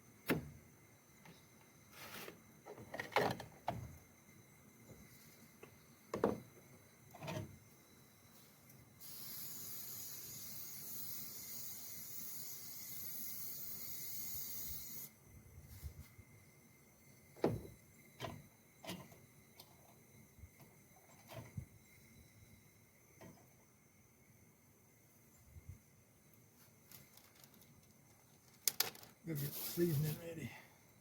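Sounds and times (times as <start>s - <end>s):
steady hiss: 3.8s - 31.0s.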